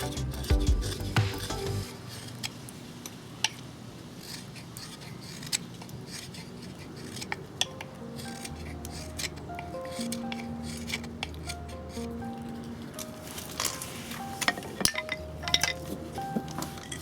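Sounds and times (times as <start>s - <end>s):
knife whittling wood: 0.0s - 2.6s, 4.2s - 7.5s, 8.1s - 12.2s.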